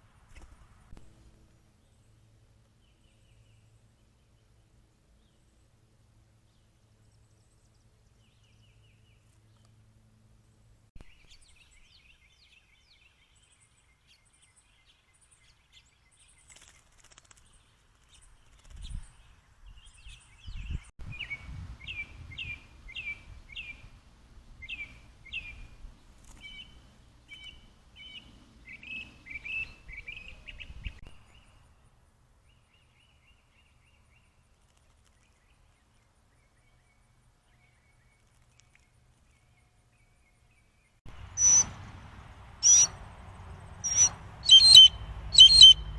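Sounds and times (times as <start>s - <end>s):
songbirds whistling and chirping: 18.1s - 23.9s, 24.6s - 25.8s, 26.4s - 31.6s, 39.4s - 41.7s, 42.6s - 43.0s, 43.8s - 45.9s.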